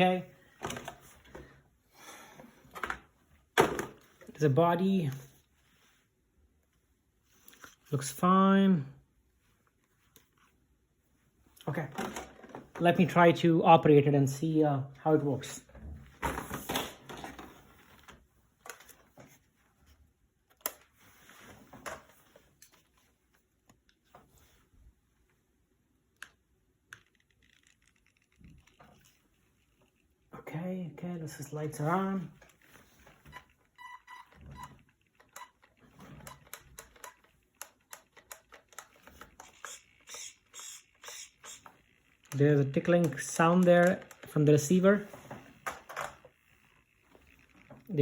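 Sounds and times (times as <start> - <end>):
toy truck and controller clicks: 26.2 - 30.0, 34.1 - 42.4, 43.0 - 44.4.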